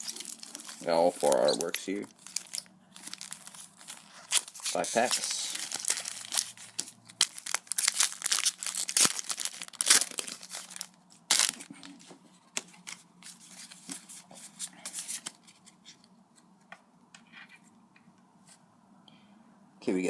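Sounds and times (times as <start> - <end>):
wrapper tearing and crinkling: 0.0 - 12.0
cards rustling and clicking: 0.0 - 16.8.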